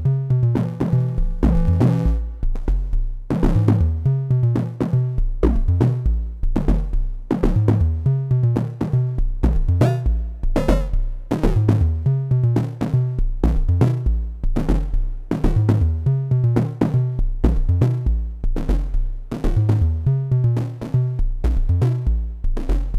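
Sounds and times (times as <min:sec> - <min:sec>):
low bass drum pulse: 0:00.0 - 0:04.1, 0:05.1 - 0:08.1, 0:09.2 - 0:12.5, 0:13.3 - 0:16.0, 0:17.2 - 0:20.0
pitched synth drum hits: 0:01.3 - 0:02.2, 0:05.4 - 0:06.0, 0:09.7 - 0:11.7.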